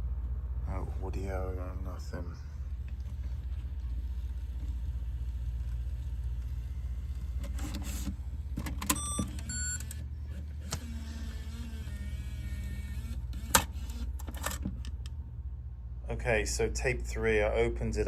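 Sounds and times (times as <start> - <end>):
tape deck motor whirring: 2.5 - 15.4.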